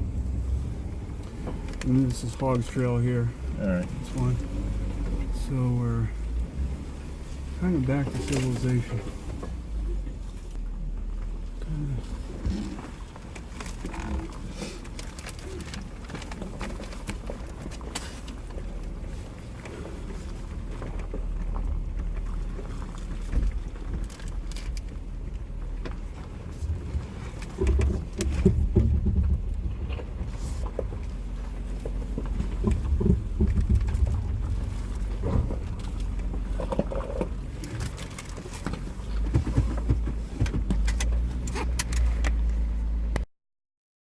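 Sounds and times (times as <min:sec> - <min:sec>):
engine and tyres rumbling on dirt: 0:00.0 - 0:43.3
body knocks and rattles: 0:07.4 - 0:42.6.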